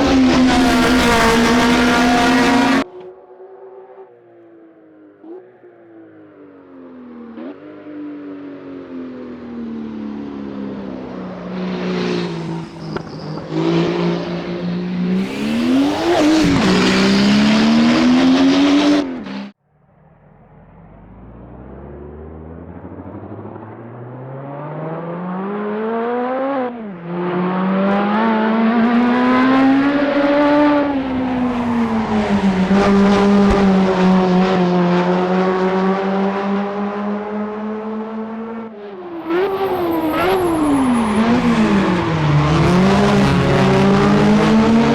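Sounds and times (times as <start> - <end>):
racing car engine accelerating: 0.0 - 4.1, 9.4 - 44.9.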